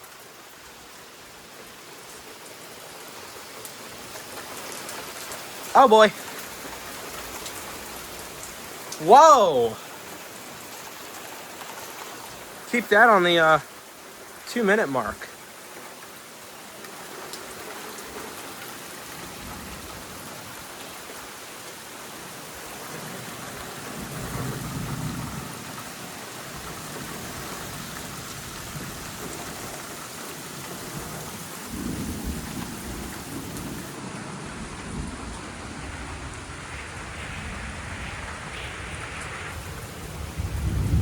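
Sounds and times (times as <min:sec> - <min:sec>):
heavy rain pouring: 0:00.0 - 0:41.0
thunder rolling: 0:31.7 - 0:41.0.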